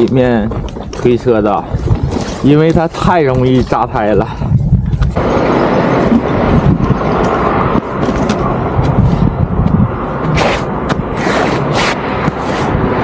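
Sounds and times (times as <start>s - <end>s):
bicycle tyres crunching over gravel: 0.0s - 4.2s
heavy low rumble: 0.0s - 13.0s.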